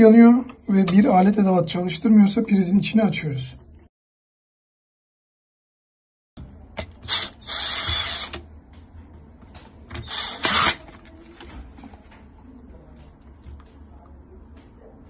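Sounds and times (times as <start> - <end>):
cordless power screwdriver running: 7.1 - 8.4, 10.0 - 10.8.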